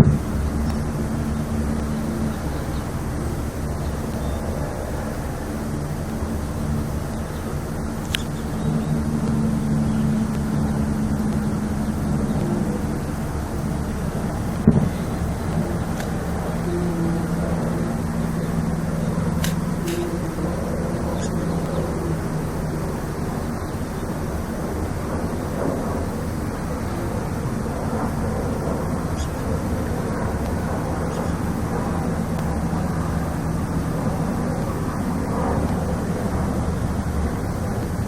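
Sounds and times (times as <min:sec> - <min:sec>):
hiss: 0:00.0 - 0:38.0
low droning hum: 0:00.0 - 0:38.0
rumbling background: 0:00.0 - 0:38.0
faint short clicks: 0:19.4 - 0:20.2.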